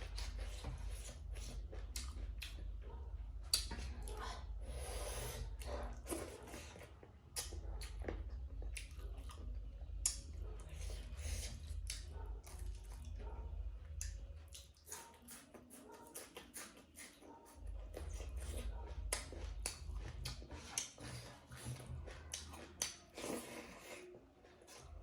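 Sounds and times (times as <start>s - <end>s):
person chewing: 0.0s - 25.0s
wet mouth clicks and smacks: 3.5s - 3.9s, 22.3s - 23.1s.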